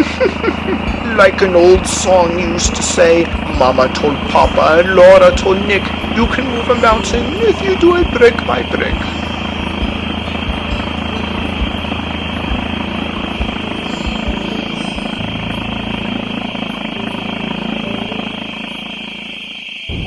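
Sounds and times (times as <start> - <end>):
aircraft engine drone: 0.0 - 20.0.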